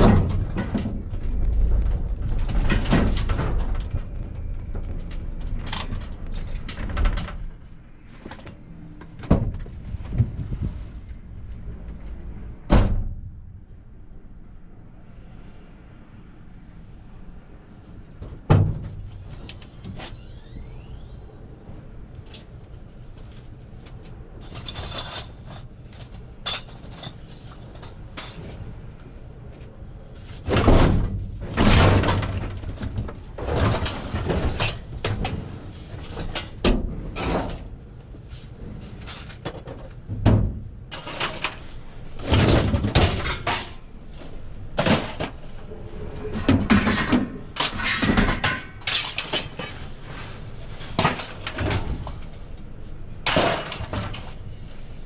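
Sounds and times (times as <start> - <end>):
low rumble: 0.0 - 18.2
scrap metal clattering: 40.9 - 45.6, 46.2 - 52.4, 53.3 - 54.8.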